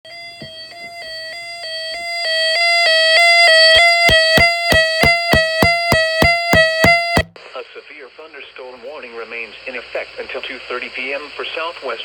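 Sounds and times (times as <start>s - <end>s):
two-pitch electronic alert tone: 3.8s - 7.3s.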